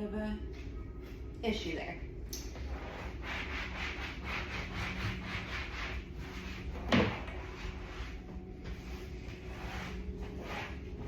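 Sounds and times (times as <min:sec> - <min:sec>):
towel rubbing: 0:02.6 - 0:11.0.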